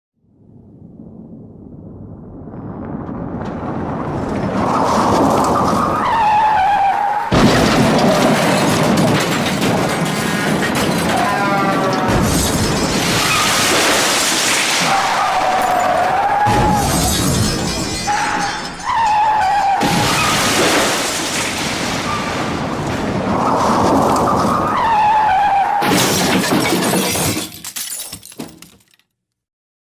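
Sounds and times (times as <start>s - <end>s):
vehicle noise: 2.0s - 25.8s
loud car crash clattering: 3.4s - 29.0s
glass shattering: 7.3s - 22.4s, 25.8s - 29.0s
tyres squealing: 9.8s - 13.7s.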